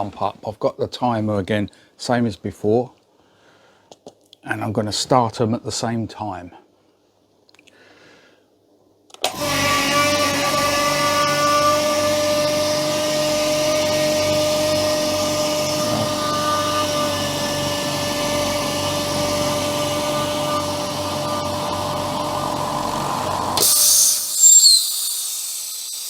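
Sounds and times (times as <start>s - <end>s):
air compressor running: 9.2s - 26.0s.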